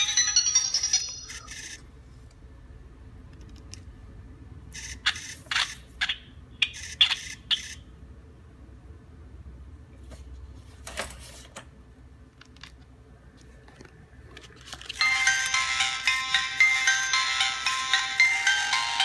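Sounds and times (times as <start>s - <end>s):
phone ringtone: 0.0s - 1.8s, 15.0s - 19.0s.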